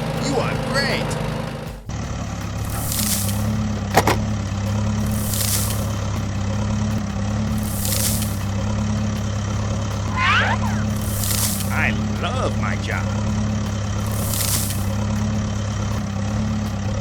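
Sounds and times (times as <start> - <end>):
construction vehicle engine drone: 0.0 - 17.0
hiss: 2.4 - 16.9
high falling squeaks: 10.0 - 11.8.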